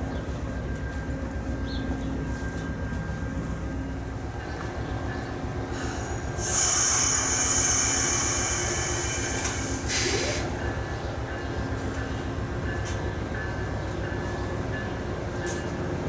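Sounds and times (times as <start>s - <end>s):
train wheels rumbling: 0.0s - 16.0s
train wheels squealing: 5.1s - 10.8s.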